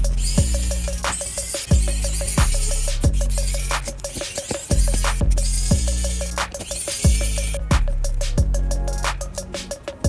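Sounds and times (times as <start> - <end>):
deep kick drums: 0.0 - 1.0, 1.7 - 3.9, 4.7 - 6.4, 7.1 - 9.4
sustained bass line: 0.0 - 1.1, 1.8 - 4.1, 4.8 - 6.5, 7.1 - 9.7
hi-hat ticks: 0.0 - 10.0.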